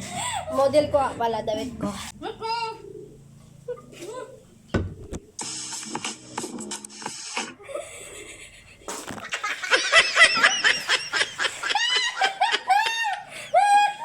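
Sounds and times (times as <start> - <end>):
people laughing hard: 7.6 - 14.0.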